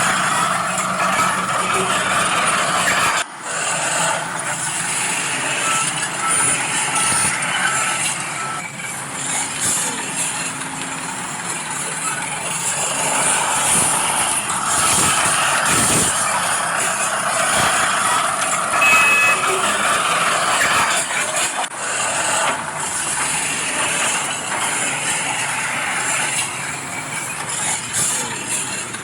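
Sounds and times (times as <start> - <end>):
heavy equipment engine: 0.0 - 29.0
short reversing beeps: 17.4 - 20.8.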